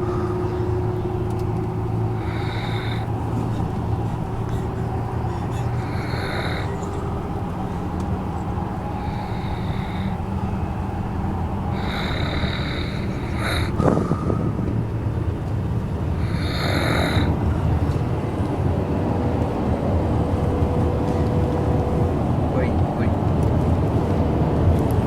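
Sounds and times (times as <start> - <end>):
steady low rumble: 0.0 - 25.0
person snoring: 2.1 - 3.6, 5.4 - 7.2, 8.9 - 10.4, 11.7 - 14.0, 16.2 - 17.4.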